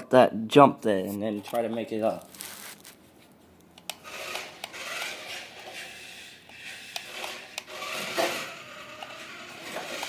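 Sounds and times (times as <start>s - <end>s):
toy car scraping over cardboard: 4.0s - 10.0s.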